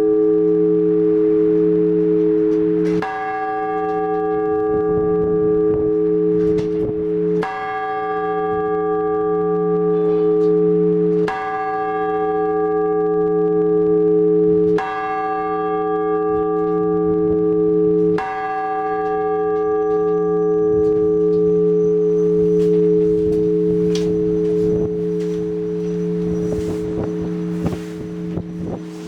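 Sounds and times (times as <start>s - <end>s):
church bell ringing: 0.0s - 29.0s.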